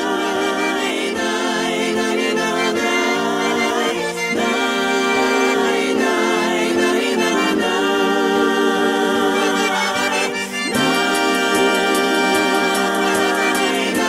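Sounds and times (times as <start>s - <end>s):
sustained keyboard chords: 0.0s - 14.0s.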